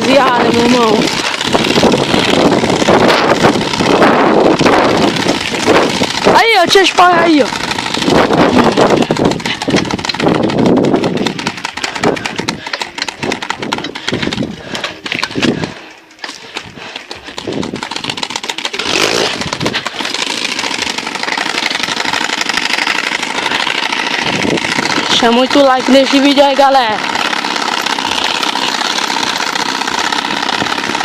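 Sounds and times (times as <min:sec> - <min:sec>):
motorcycle engine revving: 0:00.0 - 0:31.0.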